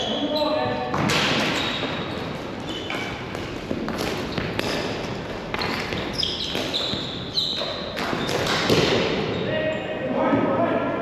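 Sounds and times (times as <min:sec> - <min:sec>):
sneakers squeaking on floor: 0:00.0 - 0:10.0
hockey sticks clacking ball: 0:00.9 - 0:09.3.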